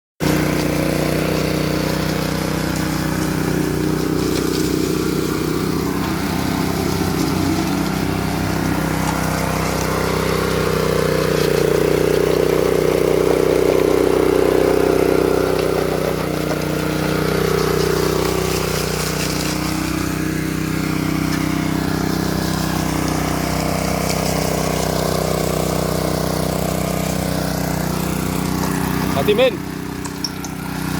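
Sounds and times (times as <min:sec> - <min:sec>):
small petrol engine running: 0:00.2 - 0:30.9.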